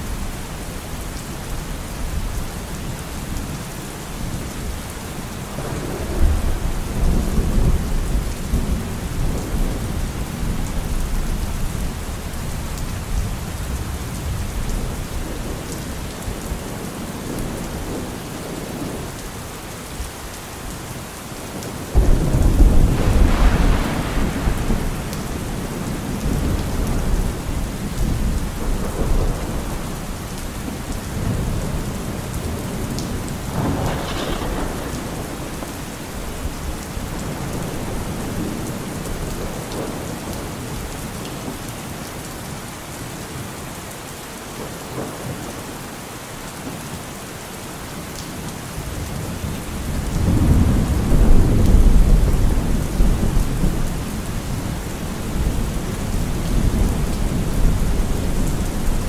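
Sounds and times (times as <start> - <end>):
rain falling: 0.0 - 59.0
thunder rumbling: 4.3 - 19.0, 21.8 - 41.4, 48.9 - 59.0
loud thunderclap: 5.5 - 11.3, 21.9 - 30.1, 31.2 - 40.1, 49.9 - 59.0.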